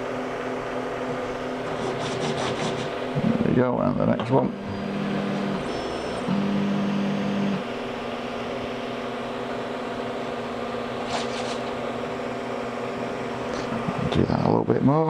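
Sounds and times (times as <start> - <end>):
printer humming: 0.0 - 15.0
stepper motors whirring: 4.3 - 8.6, 11.0 - 11.9.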